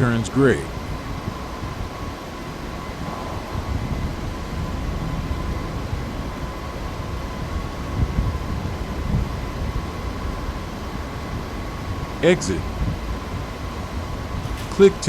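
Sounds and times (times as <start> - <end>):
faint constant whine: 0.0 - 15.0
workshop mechanical rumble: 10.6 - 15.0
short knock: 14.4 - 15.0.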